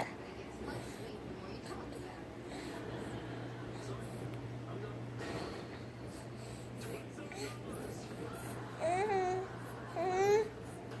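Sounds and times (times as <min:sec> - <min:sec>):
baby babbling: 0:08.8 - 0:10.5.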